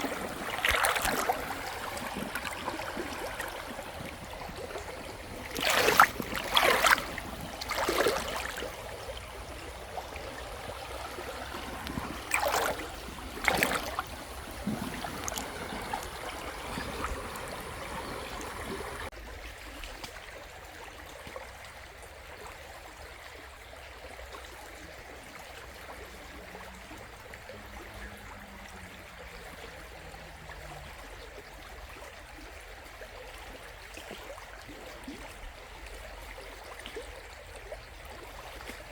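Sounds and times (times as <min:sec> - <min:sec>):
river rushing over stones: 0:00.0 - 0:09.0, 0:10.4 - 0:19.1
water gurgles and splashes: 0:00.0 - 0:38.9.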